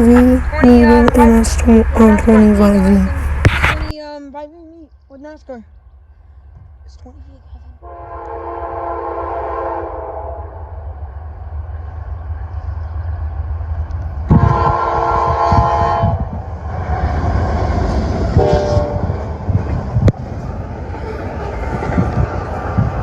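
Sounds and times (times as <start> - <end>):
diesel locomotives rumbling: 0.0 - 23.0
train air horn blasts: 7.8 - 10.7, 14.3 - 16.3, 18.4 - 19.1.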